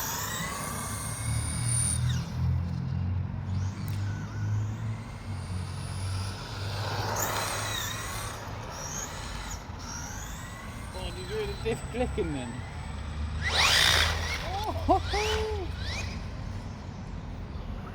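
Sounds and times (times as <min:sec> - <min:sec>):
electric motor whining: 0:00.0 - 0:17.1.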